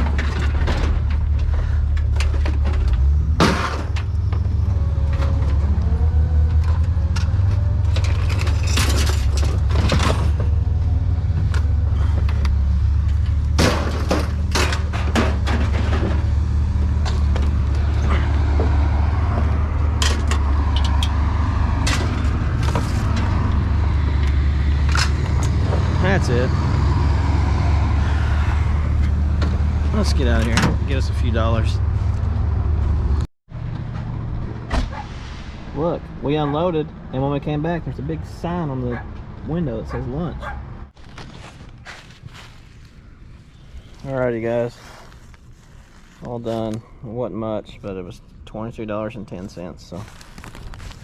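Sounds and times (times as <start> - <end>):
low engine drone: 0.0 - 36.3.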